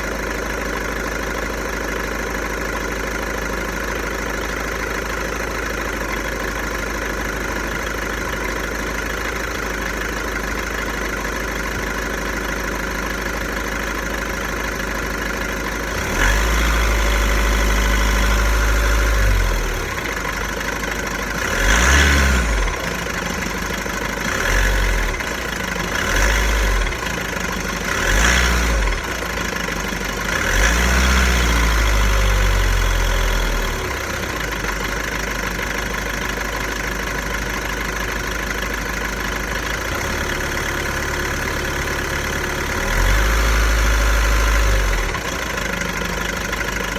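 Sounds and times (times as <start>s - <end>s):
diesel engine idling: 0.0s - 46.9s
engine revving with deep boom: 15.9s - 19.5s, 21.4s - 23.3s, 27.8s - 29.4s, 30.2s - 32.6s.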